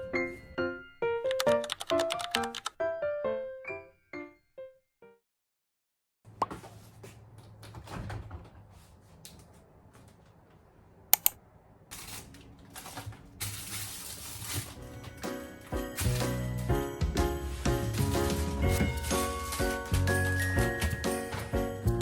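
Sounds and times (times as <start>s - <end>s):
sharp clicks: 11.2s - 11.4s.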